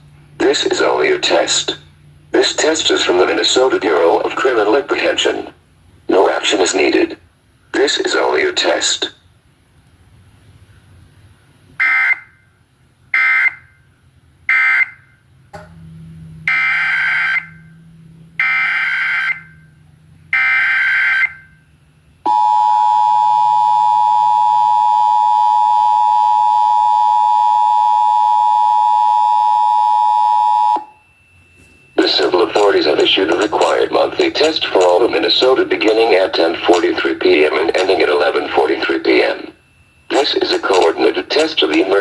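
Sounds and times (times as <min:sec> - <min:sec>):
two-tone attention signal: 0:22.3 - 0:31.0
digital data bursts: 0:32.0 - 0:42.0.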